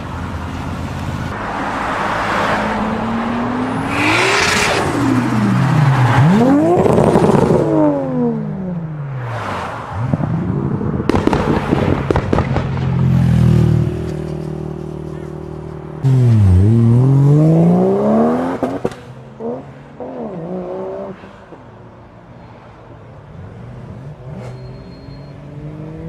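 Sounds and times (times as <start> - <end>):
exhaust pops and crackles: 11.1 - 13.0
car engine revving: 13.2 - 21.1.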